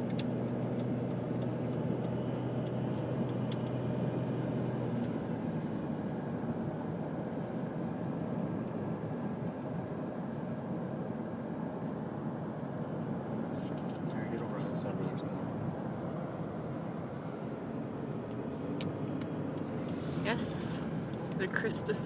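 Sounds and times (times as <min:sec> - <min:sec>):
truck engine and tyre rumble: 0:00.0 - 0:22.0.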